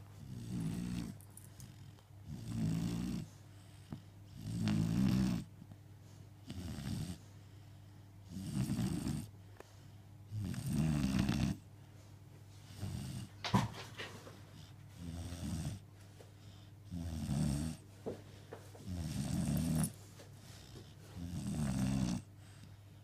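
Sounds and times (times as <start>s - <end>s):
person snoring: 0.3s - 1.1s, 10.3s - 11.6s, 21.2s - 22.3s.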